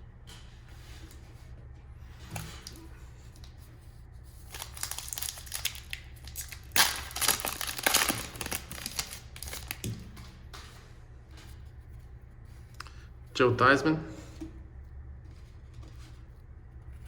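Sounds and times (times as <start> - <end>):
plastic wrapper tearing and crinkling: 4.4 - 10.0.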